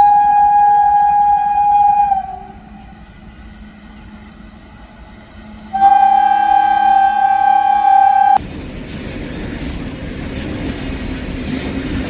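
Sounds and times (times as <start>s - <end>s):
locomotive horn: 0.0s - 3.0s, 5.4s - 8.4s
freight train rumbling past: 0.0s - 12.0s.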